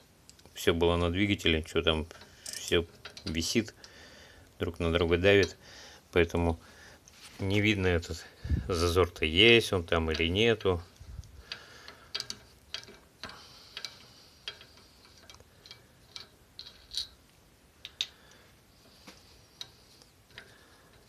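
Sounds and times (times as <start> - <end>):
light metallic clicks and taps: 9.9 - 21.0.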